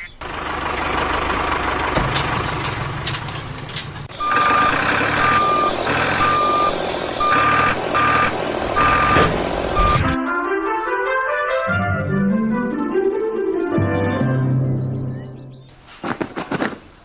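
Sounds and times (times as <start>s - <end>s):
vehicle reversing alarm beeping: 2.0s - 10.2s.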